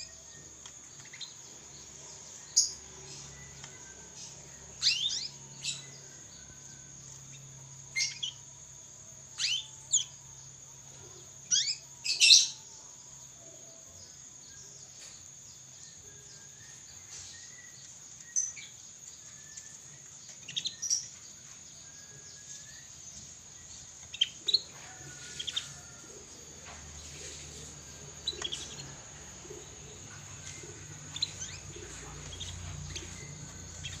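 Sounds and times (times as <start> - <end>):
canary chirping: 0.0 - 8.5, 9.4 - 10.2, 11.4 - 12.7, 15.9 - 26.0, 26.6 - 34.0
steady high hiss: 16.5 - 34.0.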